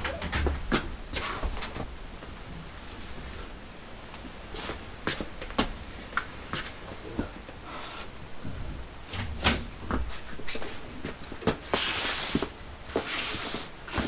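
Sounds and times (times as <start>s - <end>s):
knocks and clatters: 0.0s - 1.8s.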